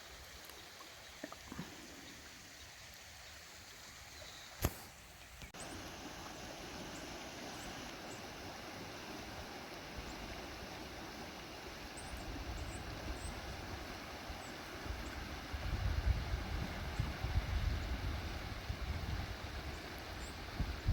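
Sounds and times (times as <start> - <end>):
flooded creek rushing: 0.0 - 20.9
wind buffeting microphone: 14.8 - 20.9.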